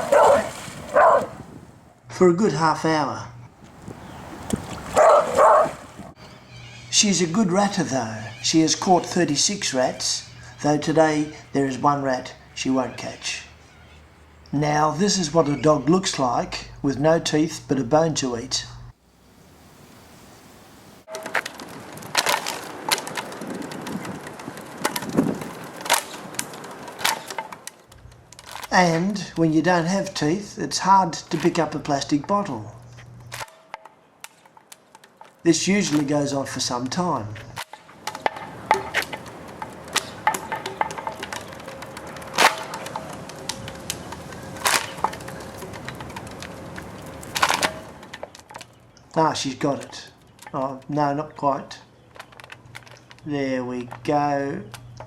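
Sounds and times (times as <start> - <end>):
plastic bottle crackling and crunching: 21.1 - 30.1, 31.0 - 55.0.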